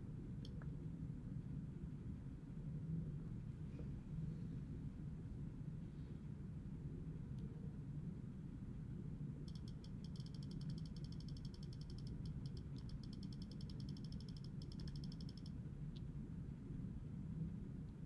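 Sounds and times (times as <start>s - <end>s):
low steady hum: 0.0s - 18.0s
faint high-pitched clicks: 0.4s - 0.8s, 9.4s - 16.2s.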